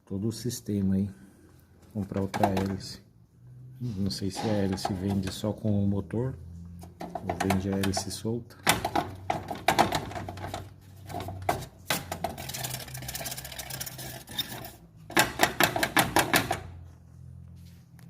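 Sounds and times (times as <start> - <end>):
broken fan blade rattling: 6.9 - 16.7.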